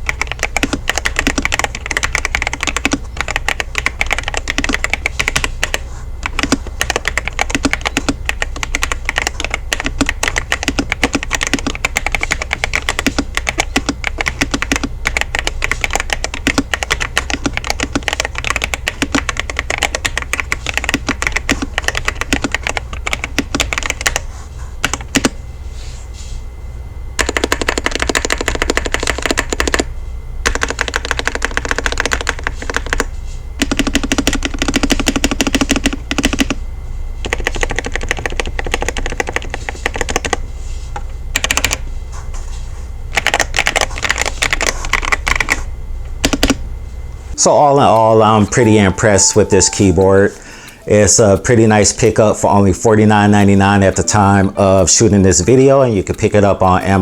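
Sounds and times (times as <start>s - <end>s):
fast typing on mechanical keyboard: 0.0s - 25.4s, 27.2s - 36.6s, 37.2s - 40.4s, 41.3s - 41.8s, 43.1s - 45.6s, 46.2s - 46.6s.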